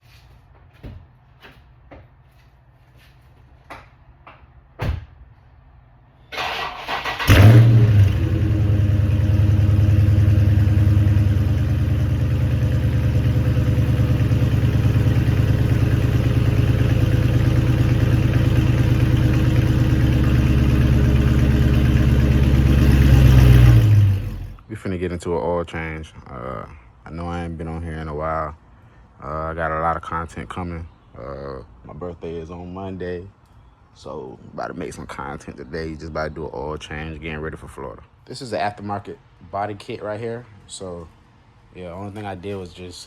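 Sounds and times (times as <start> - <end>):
car engine cranking and idling: 6.4 - 24.6.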